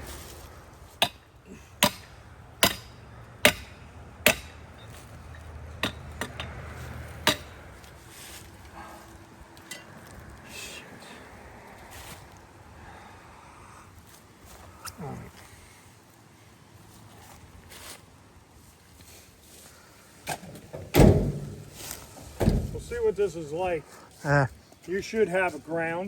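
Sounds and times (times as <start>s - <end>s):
hammer striking hard: 1.8s - 4.6s, 7.2s - 7.5s.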